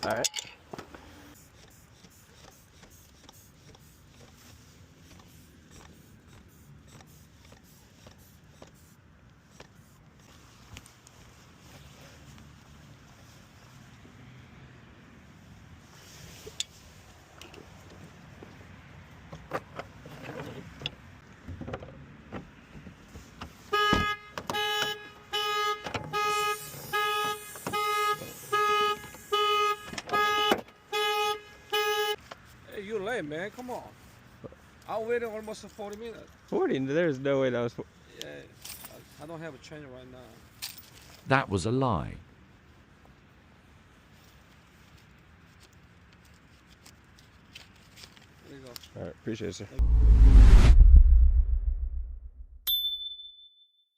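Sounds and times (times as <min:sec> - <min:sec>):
tools clicking and tapping: 0:00.0 - 0:00.6
car alarm horn honks: 0:23.7 - 0:32.2
low rumble: 0:49.8 - 0:52.7.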